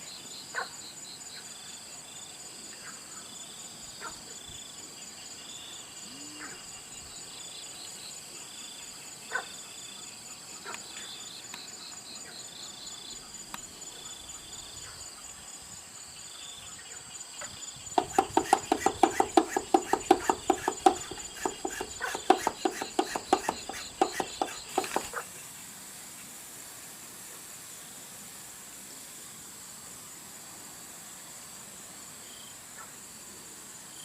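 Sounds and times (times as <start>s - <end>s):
crickets trilling: 0.0s - 25.6s
rapid sharp knocks: 18.0s - 25.2s.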